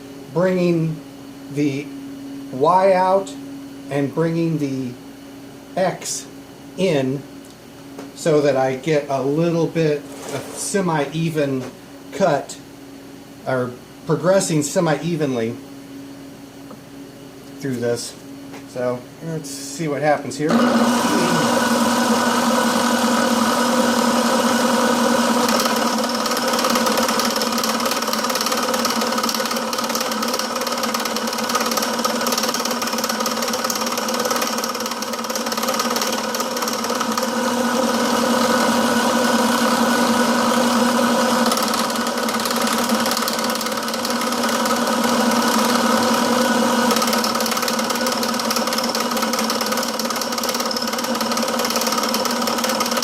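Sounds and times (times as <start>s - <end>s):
milling machine motor hum: 20.5s - 53.0s
tool bit cutting steel chatter: 25.3s - 37.3s, 41.2s - 53.0s.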